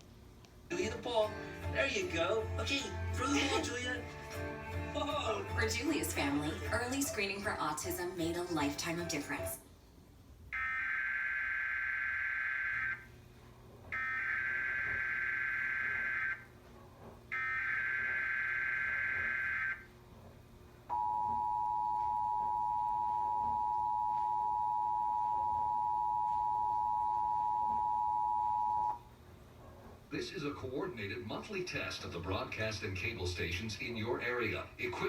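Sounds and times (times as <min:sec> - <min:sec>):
two-tone attention signal: 0:20.9 - 0:29.0.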